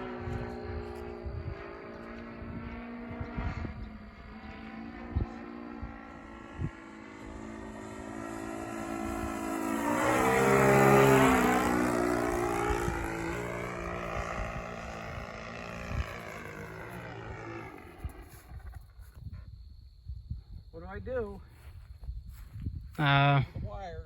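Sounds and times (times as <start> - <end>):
model plane engine flying past: 0.0 - 19.0.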